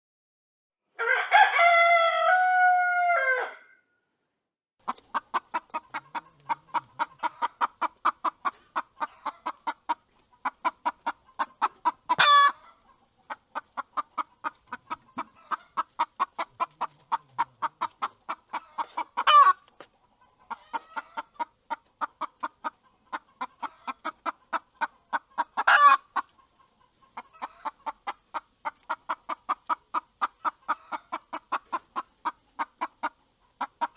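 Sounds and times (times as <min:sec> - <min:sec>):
loud chicken squawk: 0:01.0 - 0:03.8, 0:12.1 - 0:12.7, 0:25.6 - 0:26.1
rooster crowing: 0:01.0 - 0:03.8
rapid clucking: 0:04.8 - 0:33.9.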